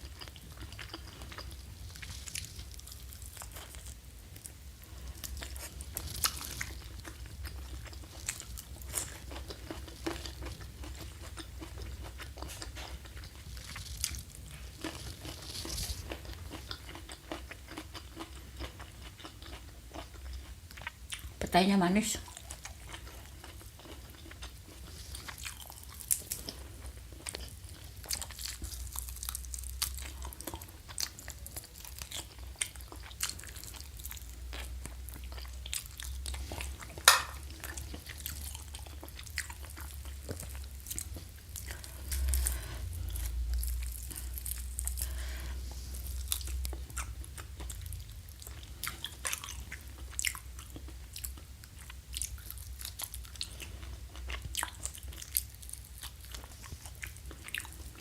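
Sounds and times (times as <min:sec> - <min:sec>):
chewing and crunching food: 0:00.0 - 0:58.0
steady low hum: 0:22.1 - 0:58.0.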